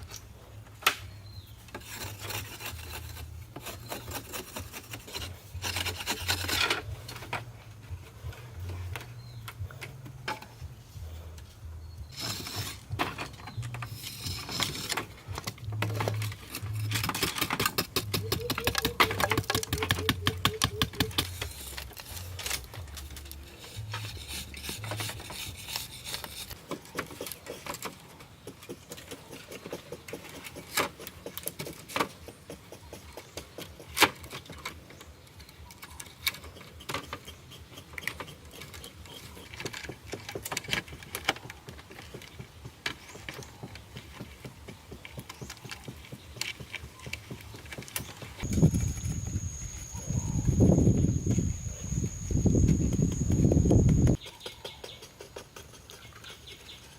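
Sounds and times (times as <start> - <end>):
hand tool rasping strokes: 1.6 - 9.4, 12.1 - 34.1.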